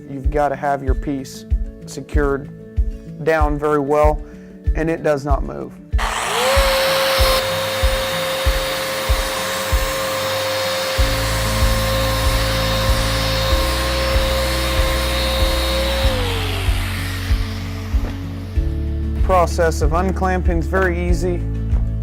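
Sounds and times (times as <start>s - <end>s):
sanding hiss: 6.0s - 18.7s
sander motor whining: 6.0s - 19.9s.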